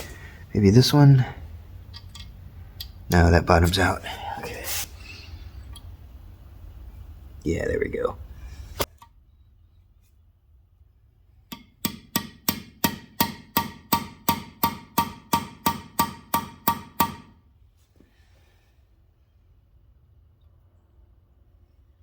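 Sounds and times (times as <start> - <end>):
hammer striking steel tool: 11.5 - 17.4.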